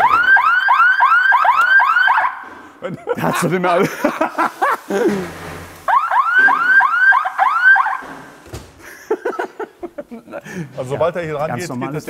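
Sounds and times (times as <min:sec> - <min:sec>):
electronic alarm whooping: 0:05.9 - 0:08.0.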